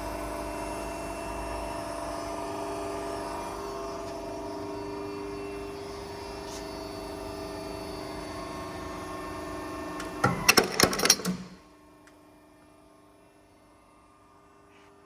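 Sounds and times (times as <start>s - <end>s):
hydraulic machine humming: 10.0s - 11.6s
metal clanks: 10.0s - 11.6s.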